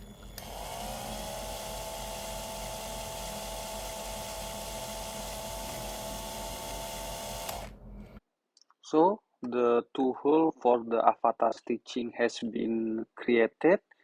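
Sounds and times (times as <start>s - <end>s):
small electric drill whining: 0.0s - 8.2s.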